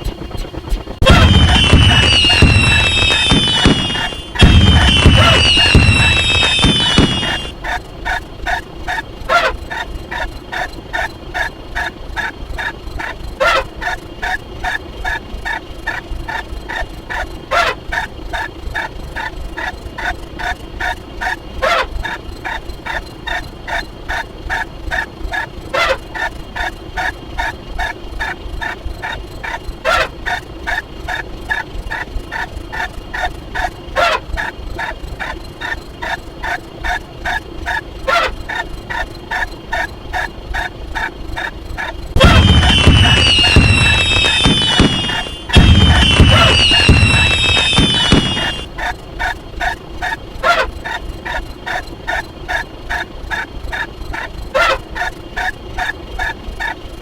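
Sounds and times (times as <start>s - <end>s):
downward sliding high tones: 1.0s - 7.5s, 42.2s - 48.7s.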